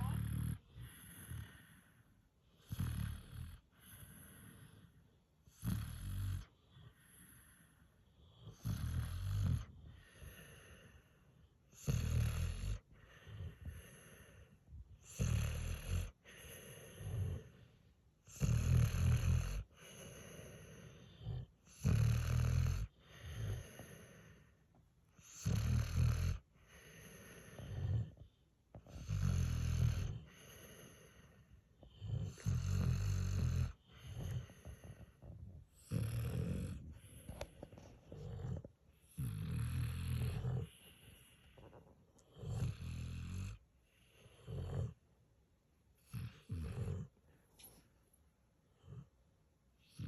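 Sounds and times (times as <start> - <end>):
dog snoring: 0.0 - 45.0, 46.0 - 47.8, 48.7 - 49.2, 49.8 - 50.0
soft breathing: 3.6 - 5.4, 9.6 - 11.7, 12.8 - 14.9, 16.1 - 18.1, 19.6 - 21.6, 22.9 - 24.8, 26.4 - 29.0, 29.9 - 39.3, 40.3 - 42.8.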